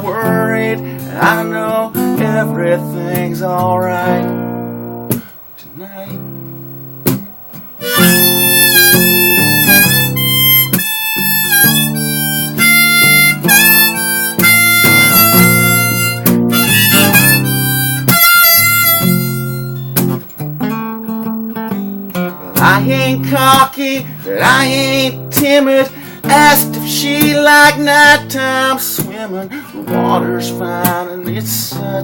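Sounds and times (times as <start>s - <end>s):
strummed acoustic guitar: 0.0s - 32.0s
harmonica solo with bending notes: 7.8s - 23.5s.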